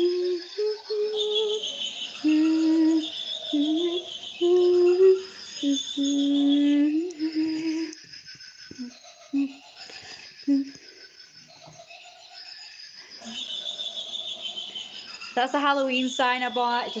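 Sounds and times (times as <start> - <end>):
person humming a slow tune: 0.0 - 8.0, 8.7 - 10.8.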